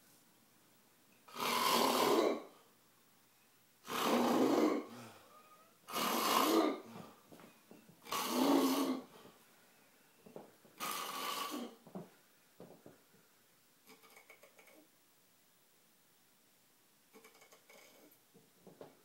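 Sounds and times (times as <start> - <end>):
person snoring: 1.3 - 2.5, 3.8 - 7.0, 8.0 - 9.1.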